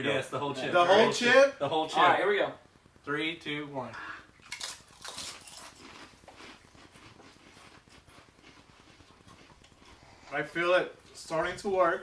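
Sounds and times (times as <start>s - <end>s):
quiet chewing: 4.2s - 11.2s
people crunching tortilla chips: 4.3s - 10.3s.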